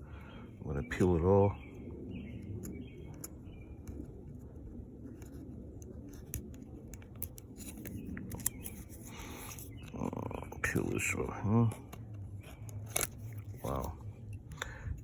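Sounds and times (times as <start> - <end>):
peeling tape liner: 12.6 - 13.9.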